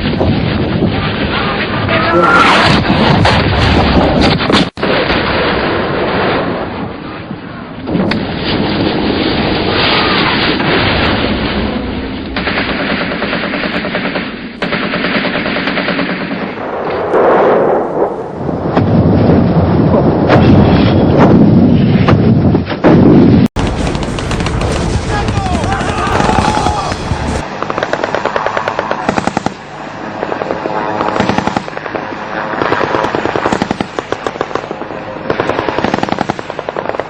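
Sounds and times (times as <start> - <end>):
rapid gunshots: 12.4 - 16.6, 23.6 - 37.0
machine-gun bursts: 30.4 - 32.0, 32.6 - 37.0.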